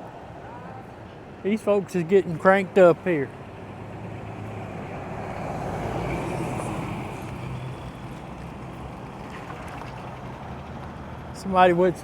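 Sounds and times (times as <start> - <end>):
vehicle engine humming: 1.5 - 12.0.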